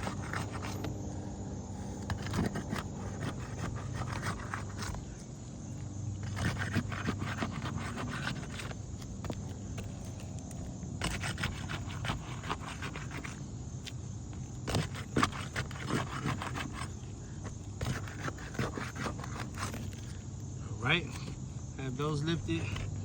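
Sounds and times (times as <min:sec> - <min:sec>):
metal tool scraping shingles: 0:00.0 - 0:01.1, 0:01.8 - 0:05.3, 0:06.2 - 0:10.3, 0:11.0 - 0:13.4, 0:14.6 - 0:20.2.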